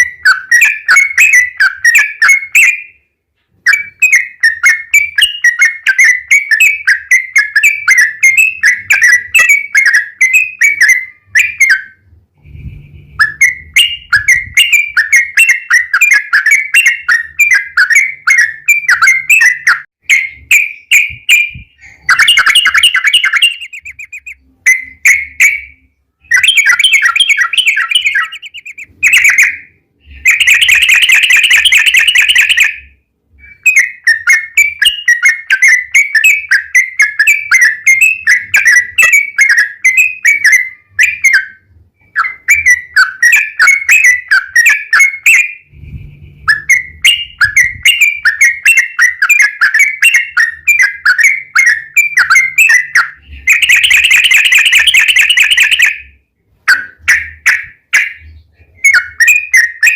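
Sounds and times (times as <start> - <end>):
bulbul singing chattering phrases: 21.0 - 24.4, 26.4 - 28.9.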